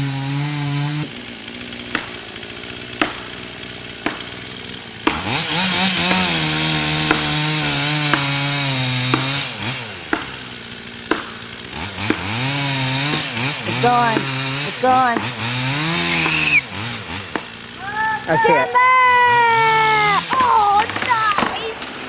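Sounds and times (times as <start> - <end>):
chainsaw cutting wood: 0.0 - 22.0
sharp knocks: 1.8 - 16.5.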